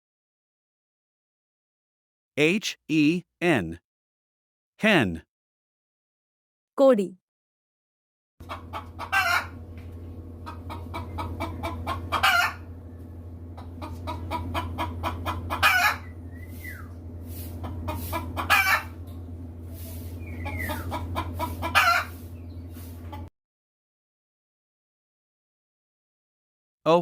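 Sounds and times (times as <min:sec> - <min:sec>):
hen clucking: 0:20.4 - 0:22.2.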